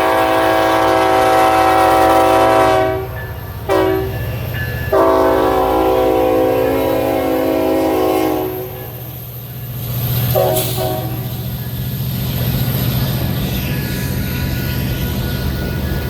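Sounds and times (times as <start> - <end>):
train horn blasts: 0.0 - 4.2, 4.9 - 9.1, 10.3 - 11.4
low rumble of passing train: 0.0 - 16.0.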